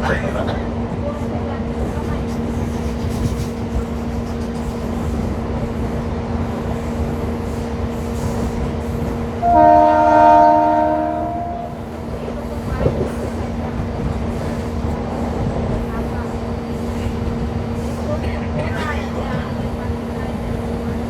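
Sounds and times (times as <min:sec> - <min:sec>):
electric train rumbling: 0:00.0 - 0:21.0
train horn chord: 0:09.4 - 0:11.8.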